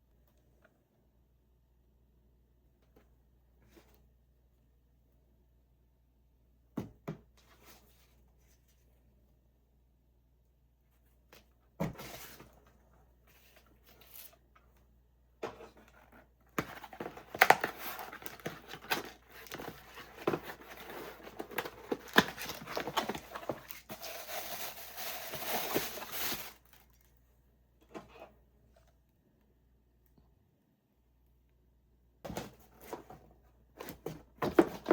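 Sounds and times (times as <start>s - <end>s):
packaging crinkling and tearing: 17.0s - 27.1s.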